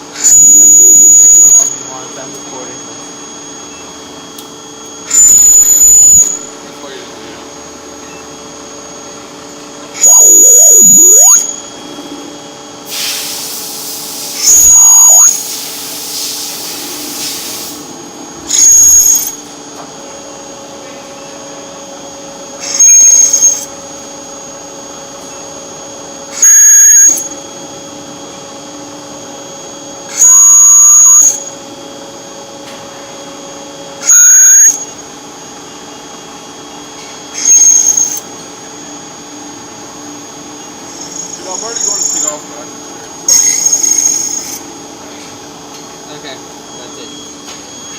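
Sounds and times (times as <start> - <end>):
steady background hum: 0.0 - 47.9
shrill squeal: 0.2 - 2.8, 5.0 - 6.6, 9.9 - 11.8, 14.4 - 15.6, 18.5 - 19.5, 22.6 - 23.7, 26.3 - 27.4, 30.1 - 31.6, 34.0 - 35.0, 37.3 - 38.3, 40.9 - 42.5, 43.2 - 44.7.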